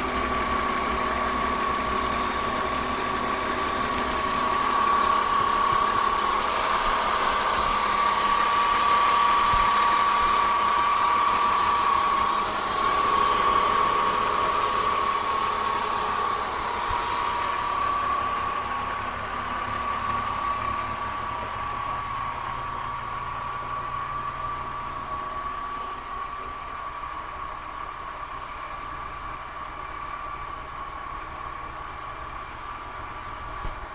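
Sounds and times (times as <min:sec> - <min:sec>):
car engine idling: 0:00.0 - 0:33.9
steady high whine: 0:01.8 - 0:22.7.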